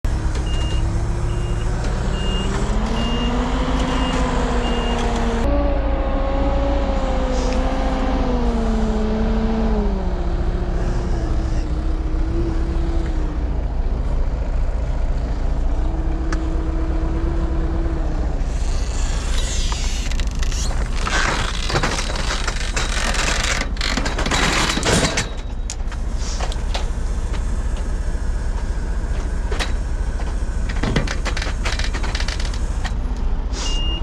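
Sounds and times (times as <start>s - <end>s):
heavy diesel machine engine: 0.0s - 34.0s
reversing alarm beeping: 0.4s - 5.1s, 33.6s - 34.0s.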